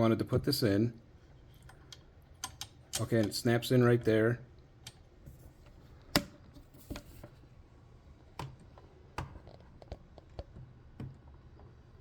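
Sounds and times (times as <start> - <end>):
small parts clicking and tapping: 1.6 - 3.4.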